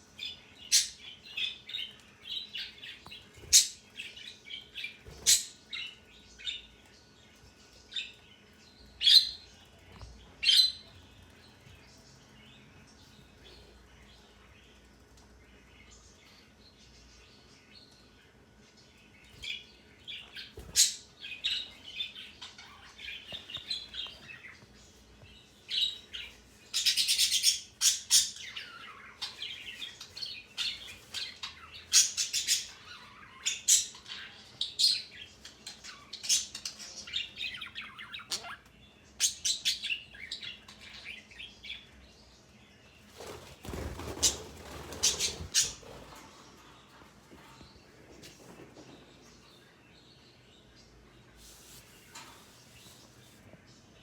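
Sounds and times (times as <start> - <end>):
parrot chirping and squawking: 35.7 - 40.5.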